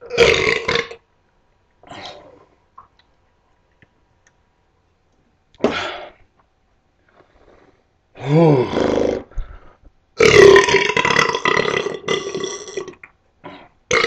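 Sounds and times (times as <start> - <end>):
faint breath: 7.1 - 8.6, 9.3 - 10.0.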